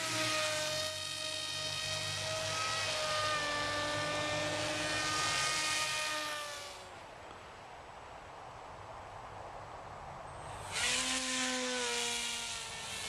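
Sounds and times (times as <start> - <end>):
electric motor and propeller whine: 0.0 - 7.4, 10.3 - 13.0.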